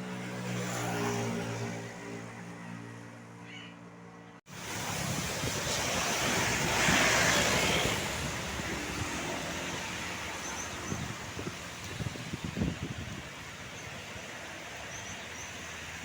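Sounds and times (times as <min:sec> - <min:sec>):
vehicle driving past: 0:00.0 - 0:10.6.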